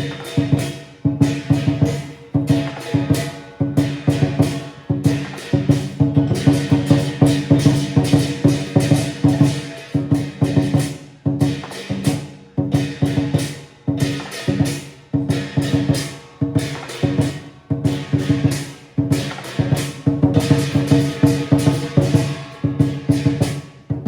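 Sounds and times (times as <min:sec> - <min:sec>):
crashing hand cymbals: 0:00.0 - 0:24.0
large drum beaten rhythmically: 0:00.0 - 0:24.0.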